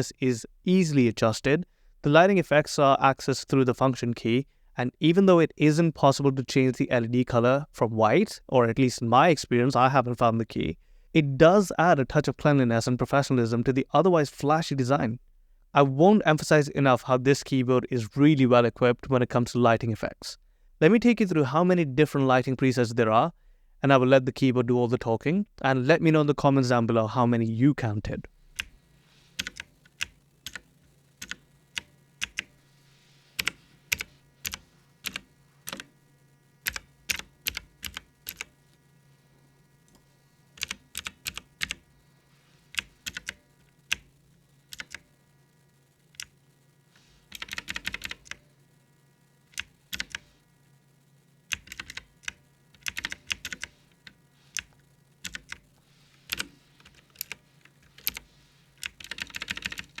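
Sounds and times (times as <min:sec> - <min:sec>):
faint low hum: 0:00.0 - 1:00.0
clicky mechanical keyboard typing: 0:29.4 - 0:32.6, 0:33.4 - 0:35.9, 0:36.6 - 0:38.6, 0:40.6 - 0:41.8, 0:42.7 - 0:44.1, 0:44.7 - 0:45.1, 0:47.3 - 0:48.4, 0:49.5 - 0:50.3, 0:51.5 - 0:55.7, 0:56.3 - 1:00.0.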